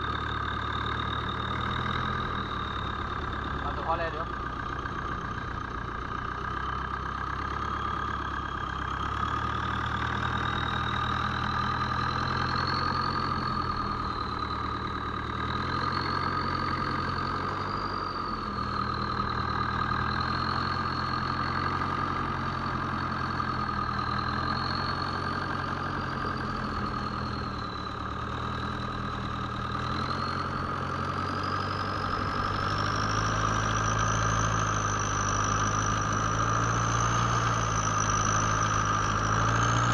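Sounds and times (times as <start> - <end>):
boat engine running: 24.6 - 39.9.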